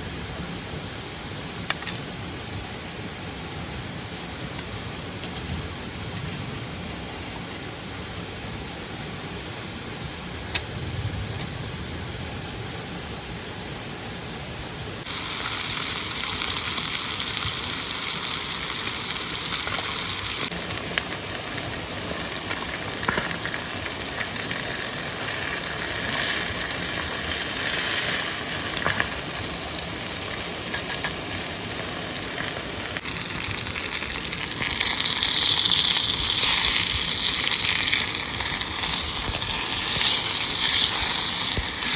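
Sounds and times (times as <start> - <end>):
food sizzling in a pan: 15.0 - 41.9.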